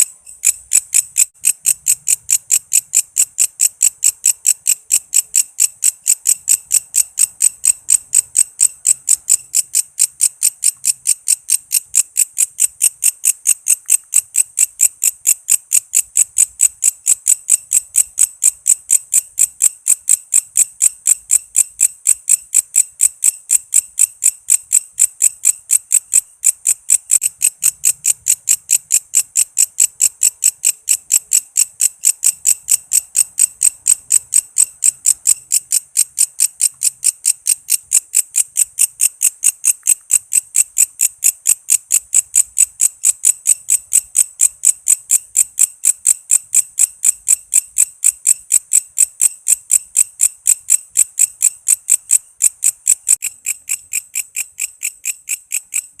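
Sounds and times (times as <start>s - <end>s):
insect chirping: 0.0s - 56.0s.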